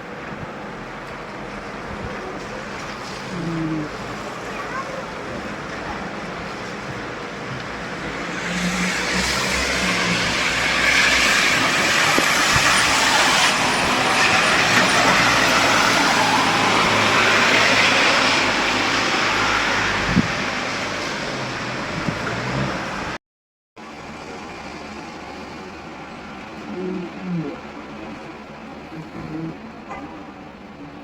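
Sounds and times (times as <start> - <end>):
rain: 0.0 - 23.2, 23.8 - 31.0
tyres hissing on wet road: 0.1 - 23.2.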